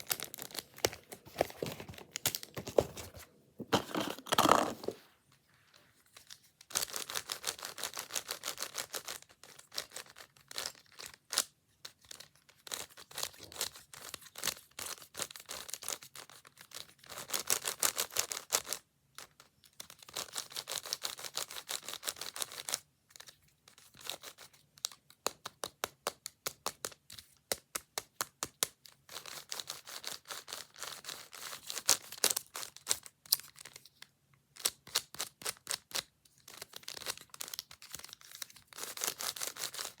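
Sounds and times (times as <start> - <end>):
puzzle cube clicking: 3.7 - 5.0.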